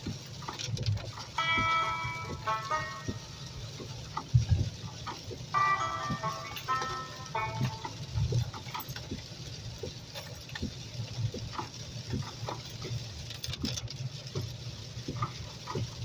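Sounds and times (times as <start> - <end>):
rain pattering on roof: 0.0 - 16.0.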